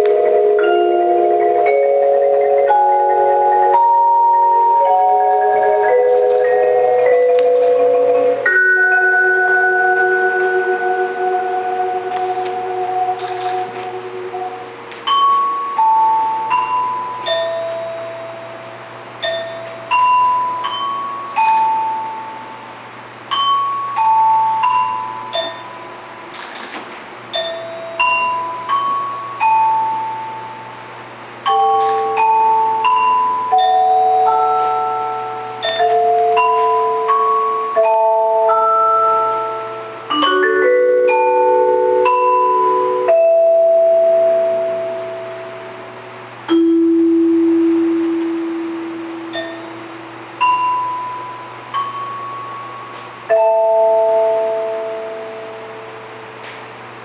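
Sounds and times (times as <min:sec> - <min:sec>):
mallet percussion melody: 0:00.0 - 0:56.7.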